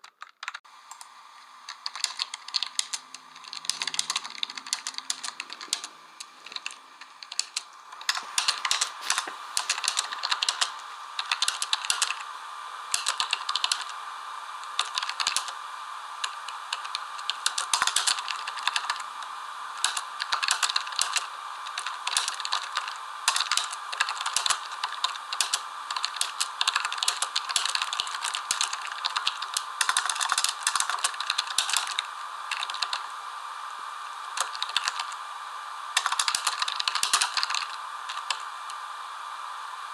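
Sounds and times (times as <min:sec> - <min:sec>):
clicking and rattling of small objects: 0:00.0 - 0:00.6.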